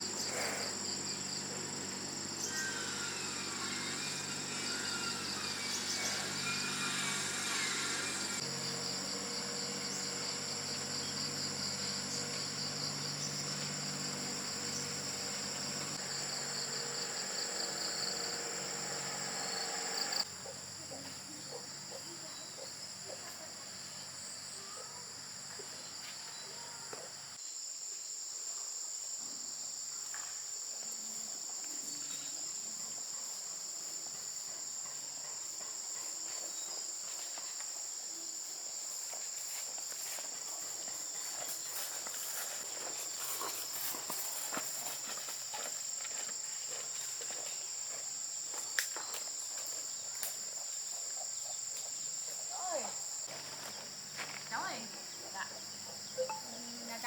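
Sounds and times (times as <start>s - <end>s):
insects trilling: 0.0s - 57.0s.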